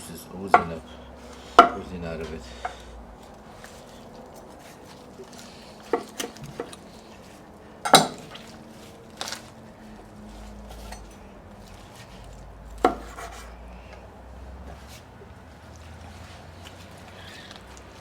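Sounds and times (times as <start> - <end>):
knife clacking on cutting board: 1.6 - 1.8, 5.9 - 6.8, 7.9 - 8.5.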